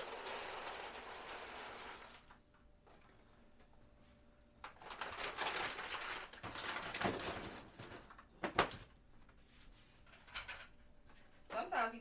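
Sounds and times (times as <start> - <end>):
bag rustling and crinkling: 4.8 - 8.3.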